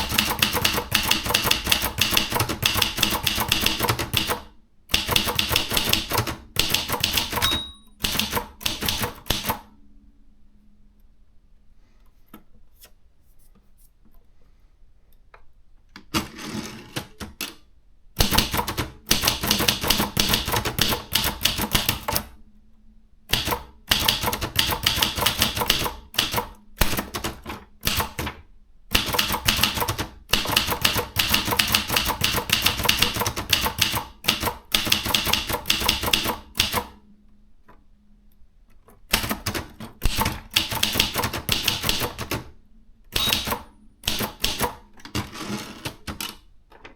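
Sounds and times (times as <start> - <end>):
manual typewriter key strikes: 0.0 - 9.6, 18.2 - 22.3, 23.3 - 28.3, 28.9 - 37.0, 39.1 - 42.5, 43.1 - 45.2.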